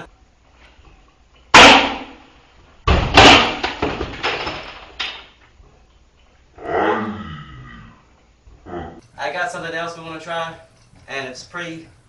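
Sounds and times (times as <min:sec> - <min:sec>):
fan blades whacking objects: 0:01.5 - 0:05.5
crash with clattering knocks: 0:02.8 - 0:05.3.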